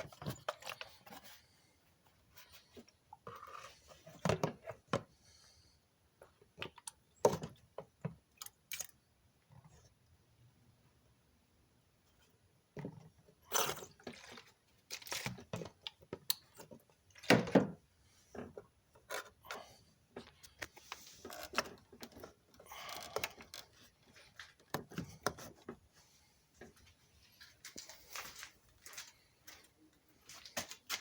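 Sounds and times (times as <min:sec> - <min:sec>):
clicks and knocks of handled parts: 0:00.0 - 0:01.4.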